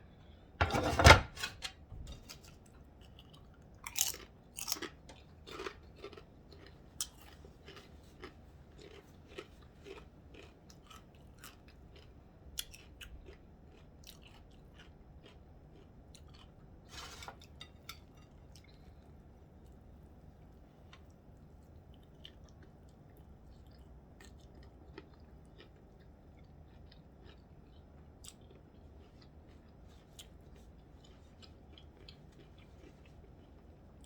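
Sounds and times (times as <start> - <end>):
mouth chewing crunchy food: 2.3 - 16.9, 21.0 - 34.0.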